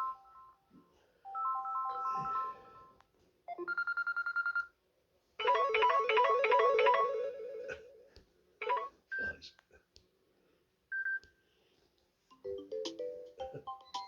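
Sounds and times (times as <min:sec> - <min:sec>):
ringtone melody: 0:01.3 - 0:03.0, 0:05.4 - 0:07.7, 0:08.6 - 0:09.0, 0:12.3 - 0:14.0.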